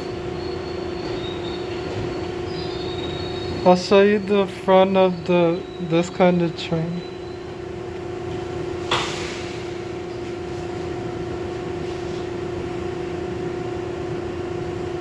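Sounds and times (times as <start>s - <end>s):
subway train humming: 0.0s - 15.0s
air hiss: 8.9s - 9.8s.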